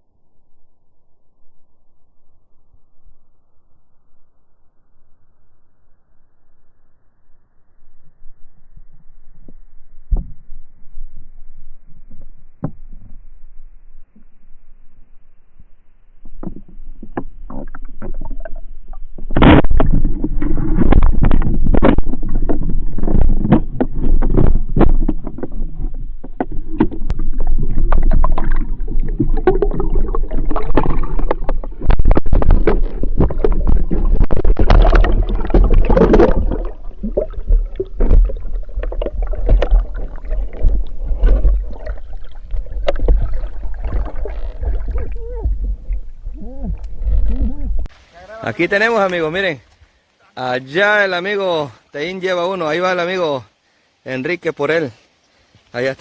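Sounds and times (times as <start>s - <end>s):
water sloshing and splashing: 16.2s - 50.2s
heavy low rumble: 20.1s - 48.9s.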